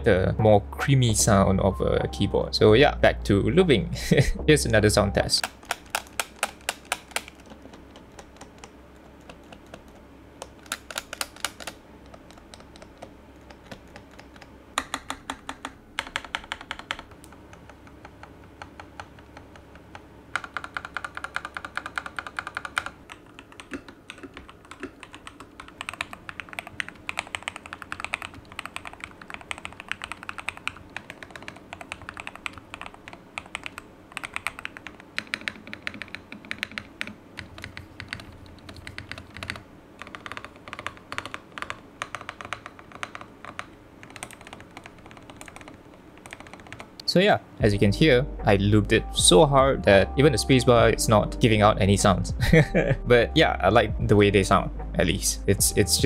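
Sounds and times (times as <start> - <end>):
mechanical keyboard typing: 5.3 - 47.0.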